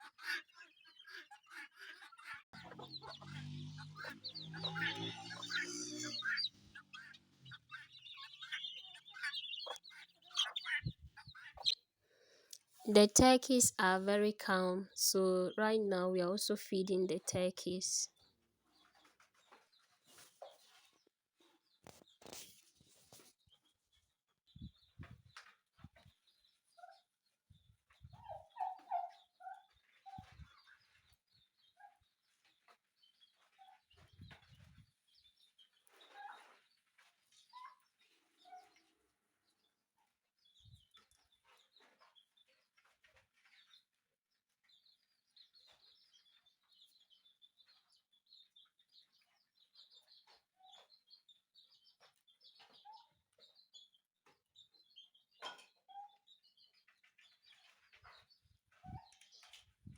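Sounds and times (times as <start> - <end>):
chickens clucking: 0.0 - 11.8.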